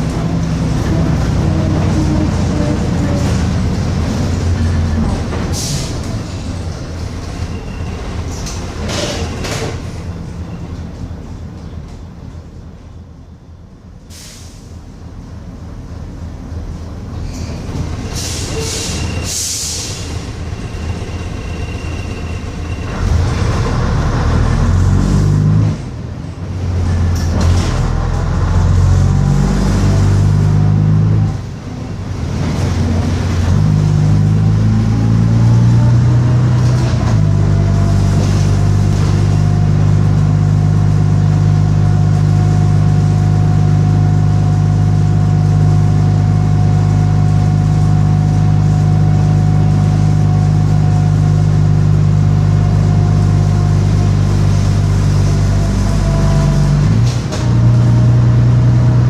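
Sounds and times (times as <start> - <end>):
bus diesel engine: 0.0 - 59.0
air brake hisses: 14.1 - 14.8, 18.2 - 20.2.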